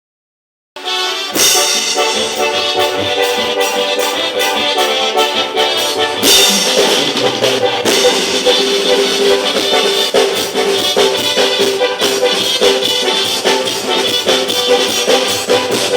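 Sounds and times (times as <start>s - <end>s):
accordion: 0.8s - 15.9s
percussion beat: 1.5s - 15.9s
maracas: 5.8s - 10.9s.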